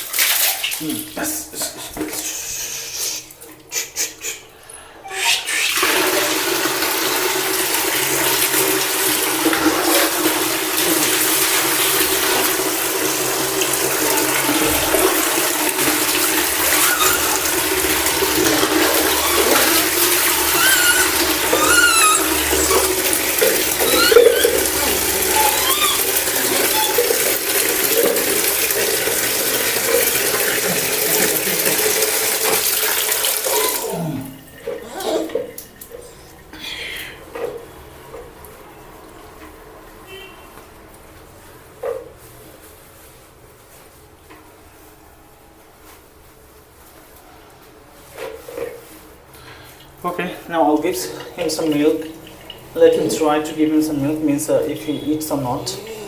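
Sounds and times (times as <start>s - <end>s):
water running and splashing: 0.0s - 4.0s, 5.4s - 39.3s, 48.2s - 56.0s
brief high squeaks: 16.6s - 17.6s, 18.9s - 27.3s.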